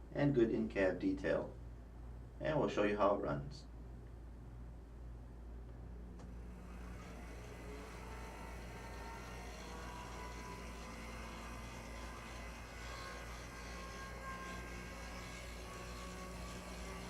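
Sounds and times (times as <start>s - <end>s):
low hum: 3.6s - 17.0s
model train motor whirring: 6.2s - 17.0s.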